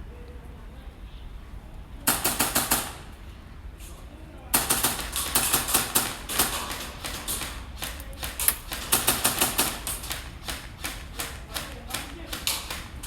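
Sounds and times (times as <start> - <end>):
airsoft guns firing: 2.1 - 3.2, 4.5 - 13.0.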